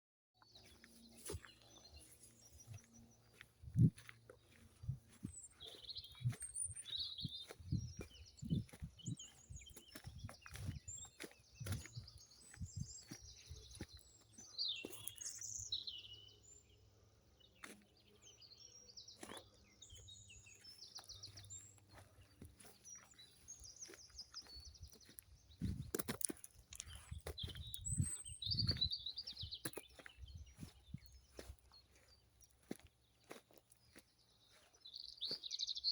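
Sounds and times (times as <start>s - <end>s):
small birds chirping: 0.4s - 35.9s
soft low thumps: 2.8s - 6.6s, 7.2s - 11.0s.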